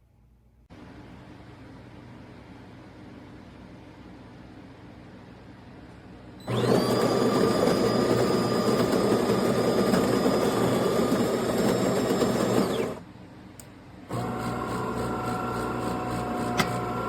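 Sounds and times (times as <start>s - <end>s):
coffee grinder motor whining and buzzing: 6.4s - 13.0s, 14.1s - 17.0s.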